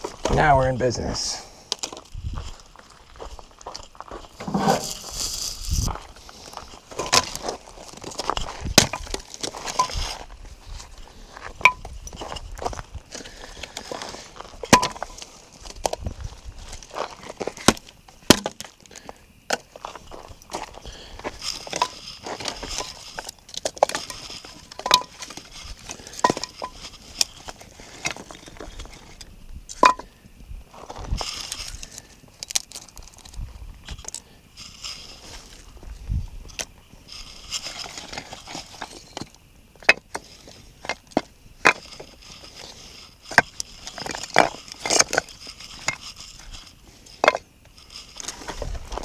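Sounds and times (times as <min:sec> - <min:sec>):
clinks and knocks of hard objects: 0:01.7 - 0:02.6, 0:06.6 - 0:10.2, 0:11.4 - 0:30.2, 0:36.5 - 0:49.0
objects clinking and knocking: 0:07.0 - 0:10.1, 0:11.6 - 0:15.2, 0:21.4 - 0:30.2.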